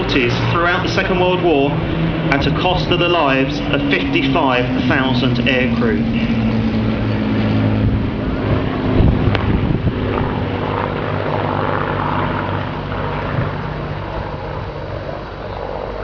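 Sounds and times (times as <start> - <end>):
propeller aircraft engines droning: 0.0 - 16.0.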